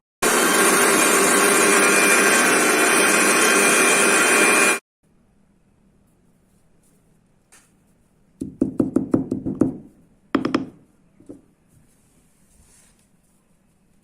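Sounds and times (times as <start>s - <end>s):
mixer grinder running: 0.2s - 4.8s.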